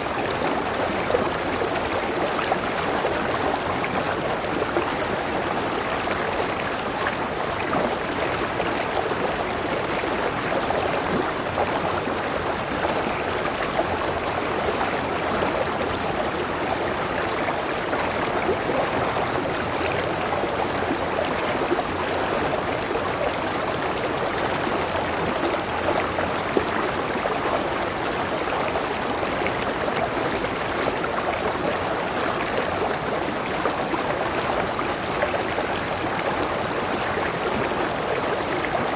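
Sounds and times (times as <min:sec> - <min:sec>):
small waterfall: 0:00.0 - 0:38.9.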